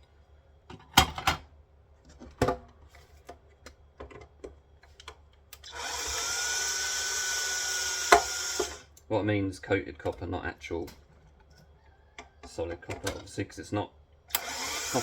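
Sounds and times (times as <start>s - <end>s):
power tool whining: 5.6s - 8.8s, 14.3s - 15.0s.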